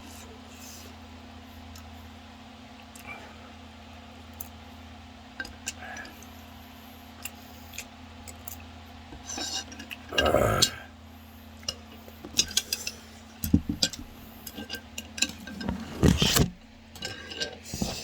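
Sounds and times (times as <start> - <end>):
utensils clinking against bowl: 11.6 - 18.0.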